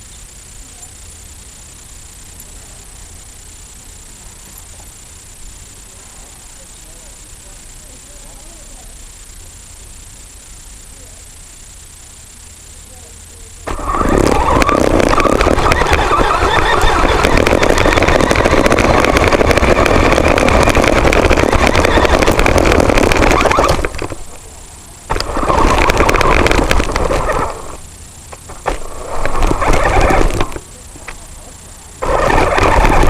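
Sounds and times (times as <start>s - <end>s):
remote-controlled vehicle driving: 12.5s - 33.0s.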